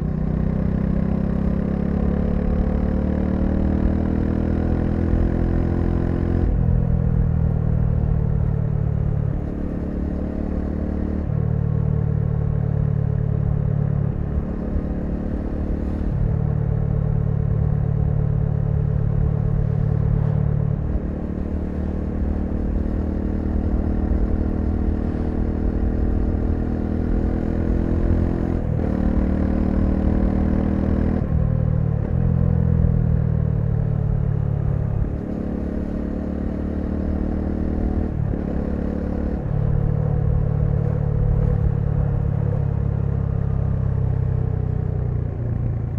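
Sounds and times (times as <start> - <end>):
motorcycle engine revving: 7.8 - 44.5.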